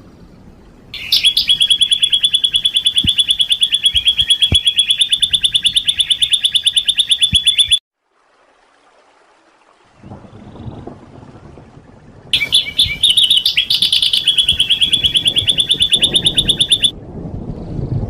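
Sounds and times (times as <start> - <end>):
songbird rapid trill: 1.0 - 7.8, 12.4 - 16.9.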